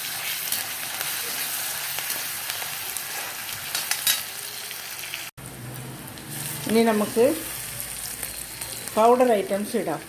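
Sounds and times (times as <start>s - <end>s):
onions sizzling in hot oil: 0.0s - 10.0s.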